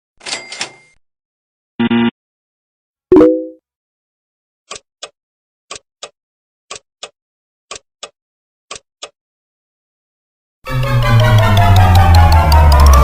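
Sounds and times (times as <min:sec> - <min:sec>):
light tick-tock clicks: 0:04.7 - 0:09.2.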